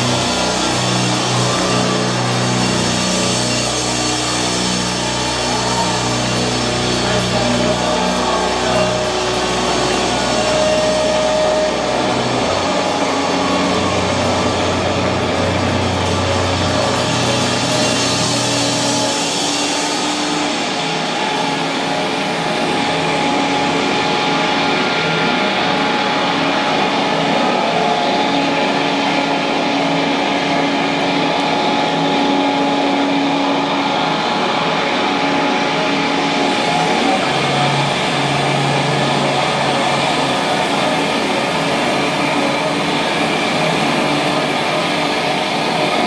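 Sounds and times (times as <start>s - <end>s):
low bass note: 0.0s - 20.6s
distorted electric guitars droning: 0.0s - 46.0s.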